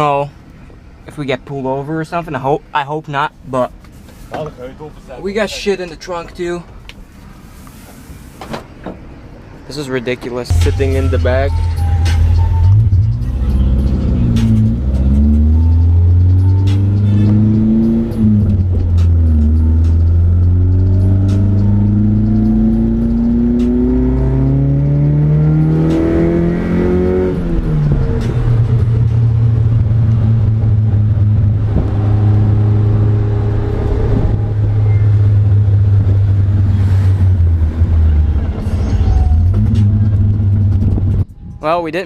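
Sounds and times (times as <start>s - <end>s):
car engine revving through gears: 11.5s - 41.2s.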